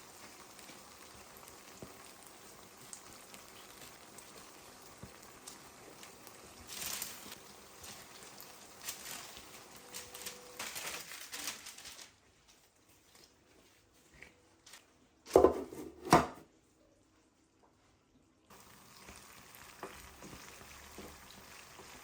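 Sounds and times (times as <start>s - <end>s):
light kitchen handling noises: 8.8s - 16.5s
loud knocks of cookware: 15.3s - 16.4s.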